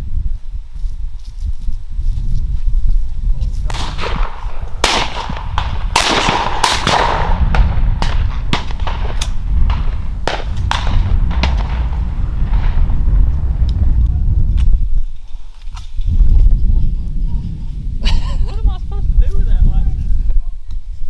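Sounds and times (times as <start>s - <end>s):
wind rumble on microphone: 0.0s - 21.0s
shotgun shots: 3.7s - 13.9s.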